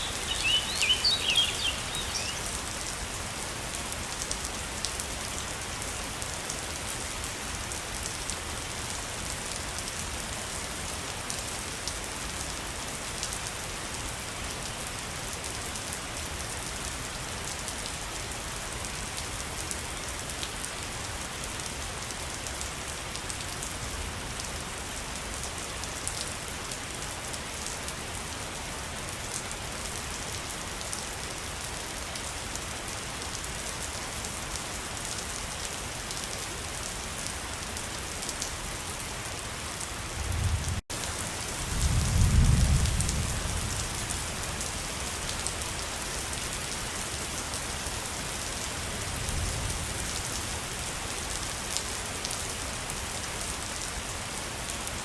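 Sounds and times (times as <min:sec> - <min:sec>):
waterfall rushing: 0:00.0 - 0:02.7.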